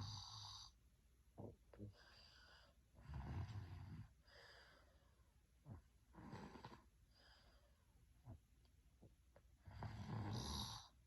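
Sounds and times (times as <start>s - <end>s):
person snoring: 9.6s - 10.9s.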